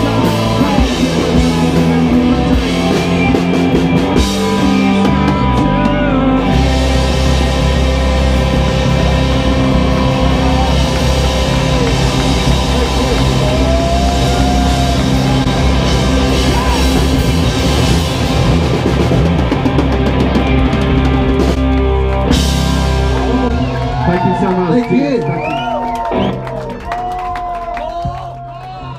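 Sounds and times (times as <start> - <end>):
loud rock band music: 0.0 - 28.9.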